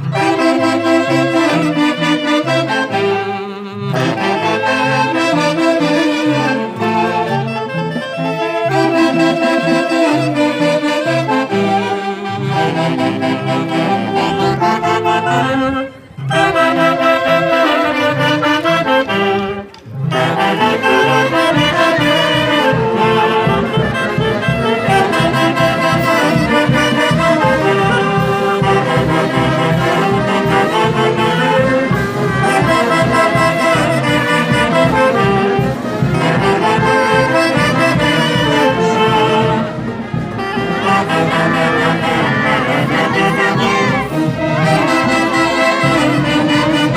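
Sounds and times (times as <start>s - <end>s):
festival band with wind instruments: 0.0s - 46.9s.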